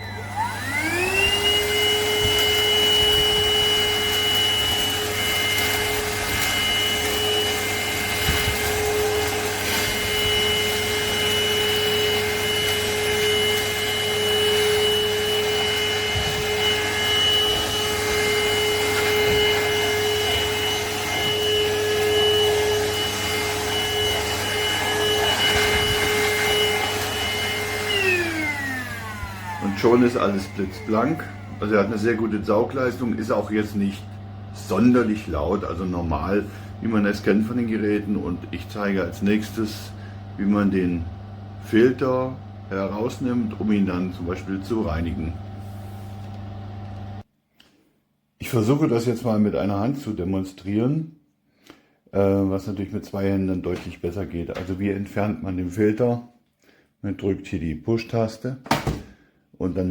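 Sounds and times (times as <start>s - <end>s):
handheld vacuum cleaner whine: 0.0s - 47.3s.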